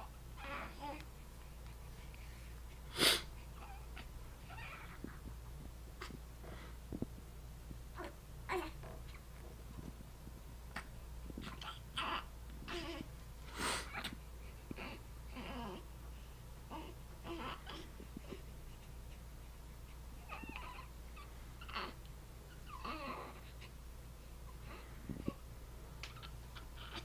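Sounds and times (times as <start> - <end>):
baby whimpering and crying: 0.4 - 1.0, 3.6 - 5.2, 11.4 - 13.1, 13.8 - 15.9, 16.7 - 18.4, 20.2 - 22.0, 22.6 - 23.8, 26.0 - 27.0.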